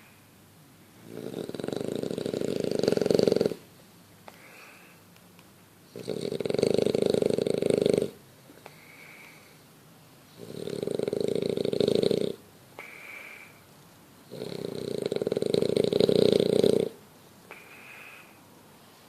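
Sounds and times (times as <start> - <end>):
dog snoring: 1.0 - 3.6, 5.9 - 8.2, 10.3 - 13.0, 14.3 - 17.6.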